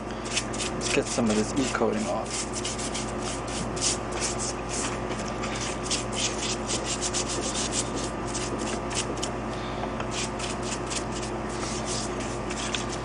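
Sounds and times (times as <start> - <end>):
brush scrubbing metal: 0.2 - 9.3, 10.1 - 13.0.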